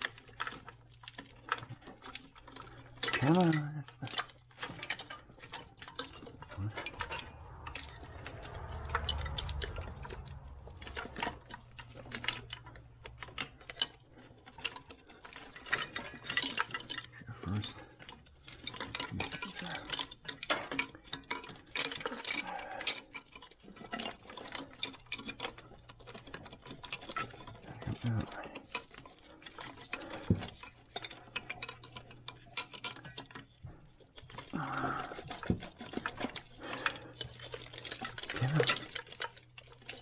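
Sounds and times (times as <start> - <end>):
low hum: 4.8 - 14.5.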